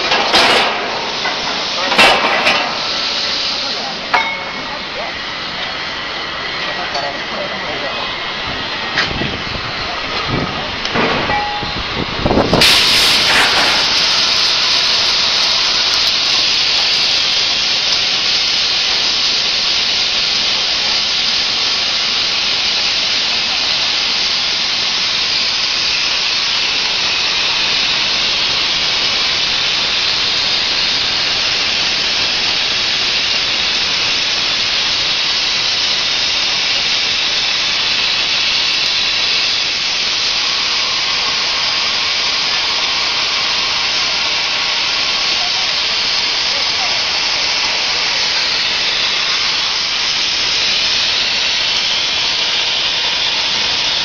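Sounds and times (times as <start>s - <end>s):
plasma torch hissing: 0.0s - 54.0s
crackle: 12.5s - 54.0s.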